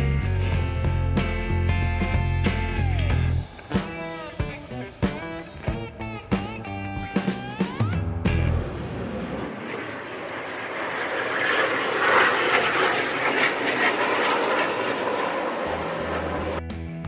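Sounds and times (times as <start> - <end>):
jet fighter flying past: 7.6 - 16.6.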